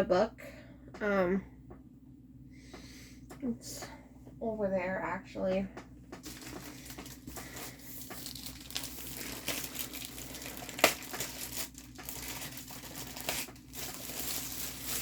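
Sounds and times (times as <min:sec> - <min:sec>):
packaging crinkling: 0:06.2 - 0:15.0.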